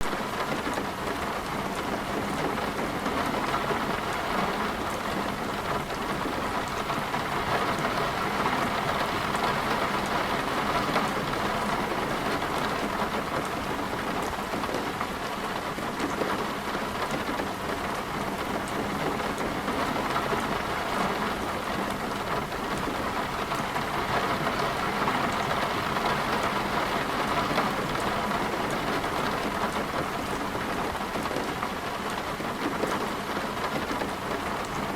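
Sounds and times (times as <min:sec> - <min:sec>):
heavy rain falling: 0:00.0 - 0:34.9.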